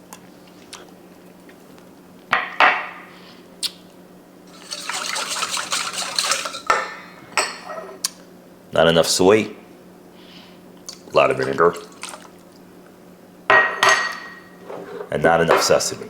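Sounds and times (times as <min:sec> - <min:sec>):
whisking liquid in a bowl: 0:04.5 - 0:07.0, 0:11.3 - 0:12.4
whisk clinking against bowl: 0:04.5 - 0:07.6.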